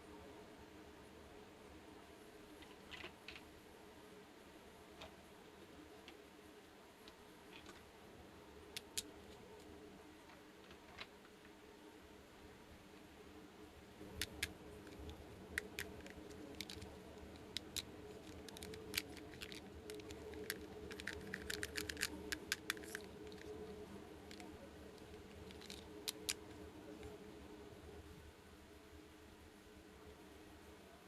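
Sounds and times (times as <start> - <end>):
small plastic pieces clicking: 8.8 - 9.1, 14.1 - 23.6, 24.2 - 26.5.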